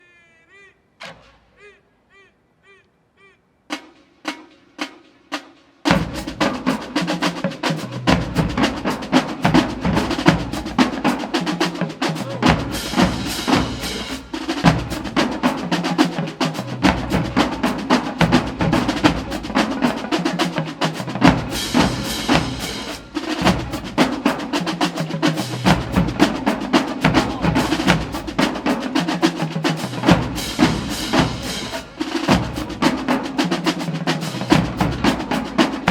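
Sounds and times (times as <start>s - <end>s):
marching snare and bass drums: 3.7s - 35.9s.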